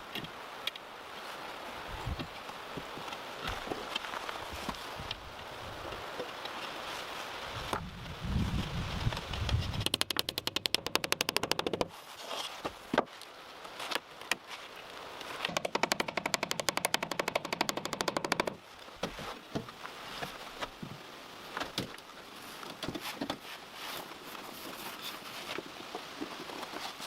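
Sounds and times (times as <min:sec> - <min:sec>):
rapid sharp taps: 0:09.8 - 0:11.9, 0:15.5 - 0:18.6.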